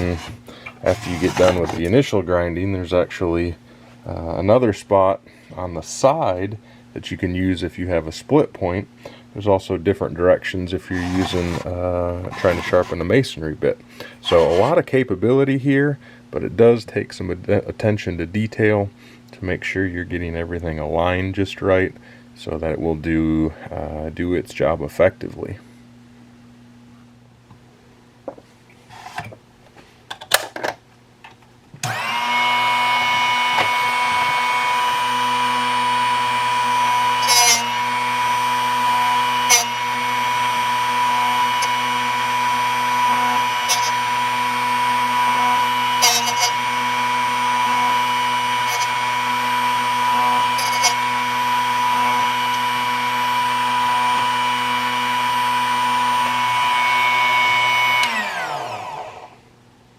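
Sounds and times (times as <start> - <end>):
sharpener motor whine: 0.0 - 1.8, 10.9 - 11.7, 31.8 - 59.4
drill bit grinding scrapes: 0.0 - 2.0, 10.8 - 13.1, 14.2 - 14.8, 31.8 - 59.3.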